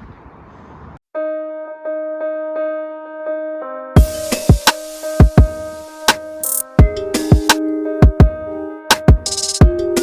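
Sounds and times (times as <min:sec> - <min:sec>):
hissy percussion: 0:04.0 - 0:06.6.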